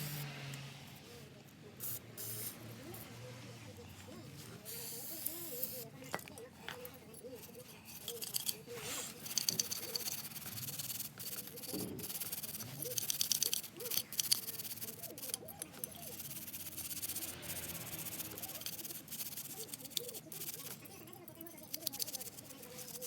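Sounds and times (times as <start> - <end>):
rubbing and scraping small parts: 4.3 - 23.0
light rattles and clicks: 6.0 - 23.0.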